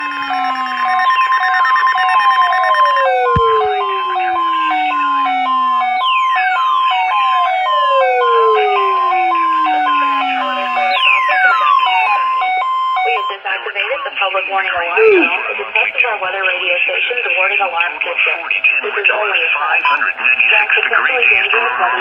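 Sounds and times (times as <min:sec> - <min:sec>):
warbling alarm buzz: 0:00.0 - 0:13.3
falling siren sweep: 0:00.0 - 0:13.4
two-tone hi-lo siren: 0:00.0 - 0:13.4.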